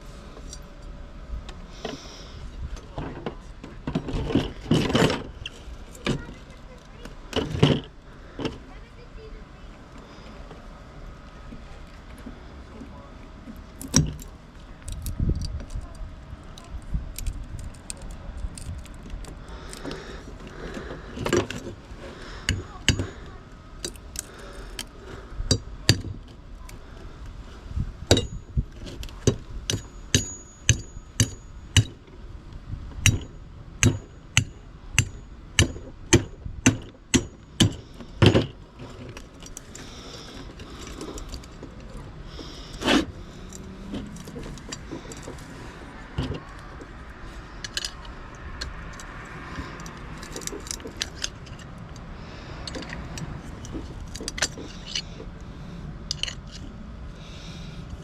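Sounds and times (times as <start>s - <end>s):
hammer striking metal: 29.7s - 32.0s, 33.0s - 37.8s
metal pieces clinking: 47.6s - 49.1s.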